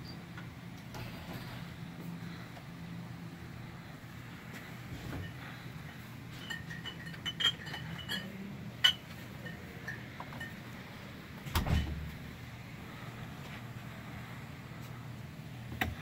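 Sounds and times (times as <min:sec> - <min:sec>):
steady low hum: 0:00.0 - 0:16.0
light metallic clinks and clicks: 0:06.3 - 0:10.6.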